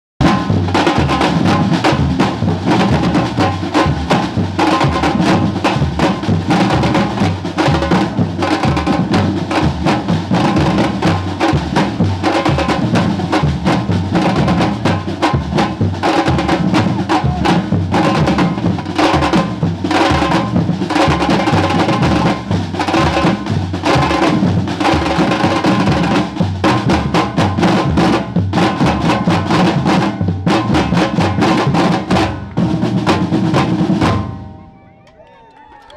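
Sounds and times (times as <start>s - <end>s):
drums playing a steady rhythm: 0.2s - 35.2s.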